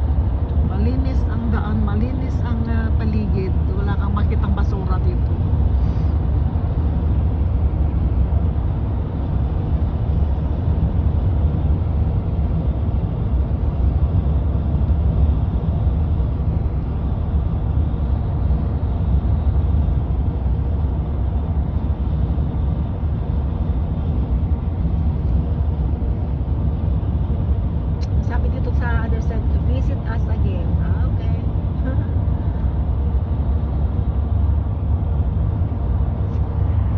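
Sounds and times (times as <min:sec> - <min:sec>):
car interior road rumble: 0:00.0 - 0:36.9.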